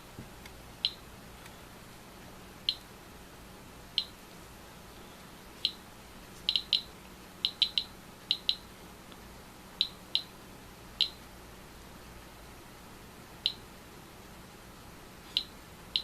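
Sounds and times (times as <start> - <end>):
geiger counter beeping: 6.5 - 6.9, 7.5 - 8.6.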